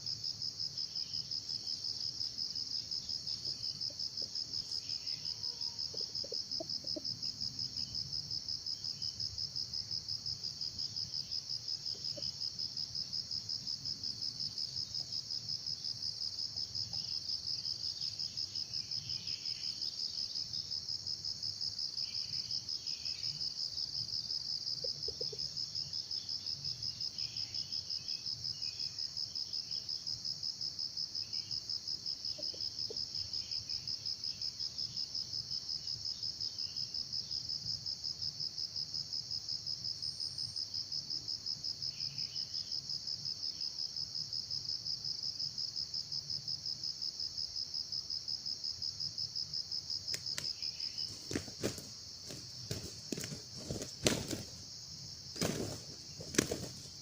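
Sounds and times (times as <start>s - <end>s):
cricket trilling: 0.0s - 57.0s.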